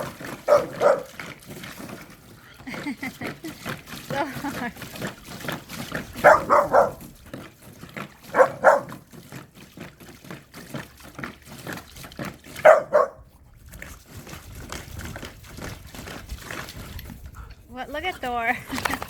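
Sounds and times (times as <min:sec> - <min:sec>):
dogs barking: 0:00.0 - 0:01.2, 0:06.2 - 0:07.1, 0:08.3 - 0:09.0, 0:12.6 - 0:13.3
dogs splashing in water: 0:00.0 - 0:19.0.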